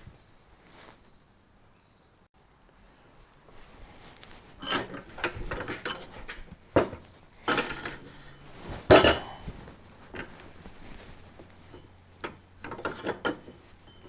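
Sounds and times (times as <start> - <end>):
metal scraping: 4.0 - 14.0
metal parts clanking: 4.4 - 14.0.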